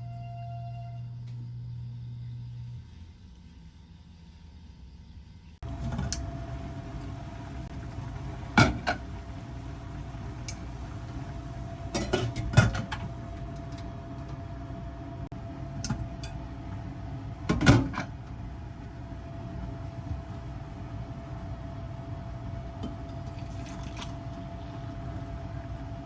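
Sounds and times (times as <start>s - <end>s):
appliance humming: 5.6s - 26.0s.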